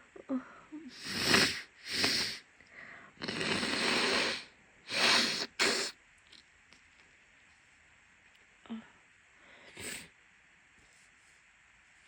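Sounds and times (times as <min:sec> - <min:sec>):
woman sniffing: 0:00.9 - 0:02.4, 0:03.2 - 0:06.0, 0:09.7 - 0:10.1.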